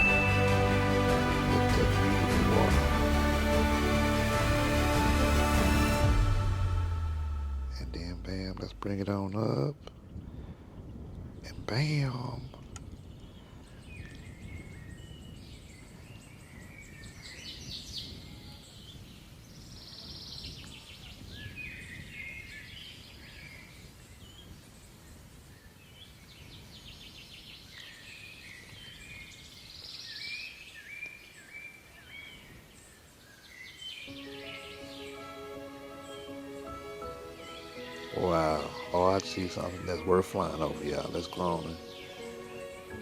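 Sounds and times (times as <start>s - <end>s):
low wind rumble: 0.0s - 19.8s
birds chirping and trilling: 0.0s - 43.0s.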